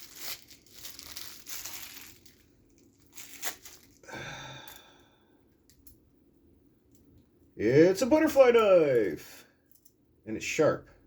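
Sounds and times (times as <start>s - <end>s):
plastic packaging crinkling: 0.0s - 4.9s.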